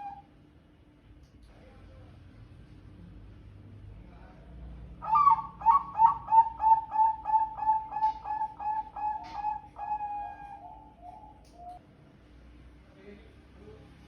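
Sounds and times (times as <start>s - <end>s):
dove cooing call: 0.0s - 0.3s, 5.0s - 11.8s.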